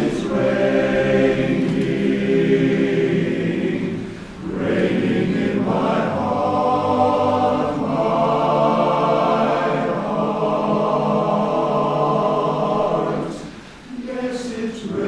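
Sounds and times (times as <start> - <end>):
barbershop chorus singing: 0.0 - 15.0.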